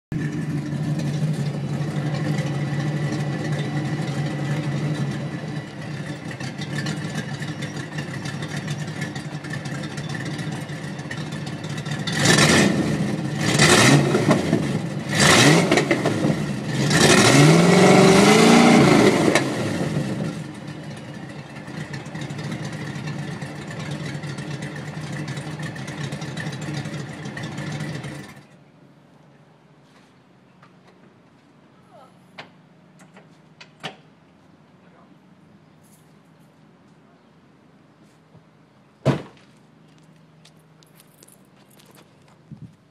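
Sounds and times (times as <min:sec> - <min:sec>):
car engine idling and revving: 0:00.1 - 0:28.7.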